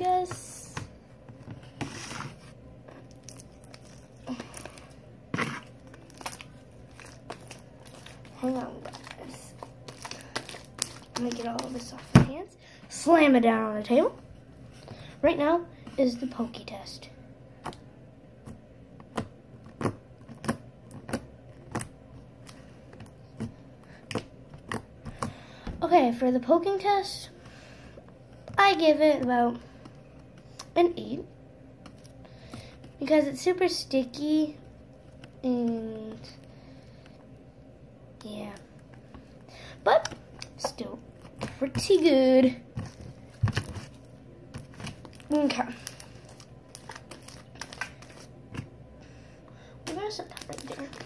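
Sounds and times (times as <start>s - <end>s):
slime squelching: 1.6s - 13.2s, 17.5s - 25.6s, 38.2s - 51.0s.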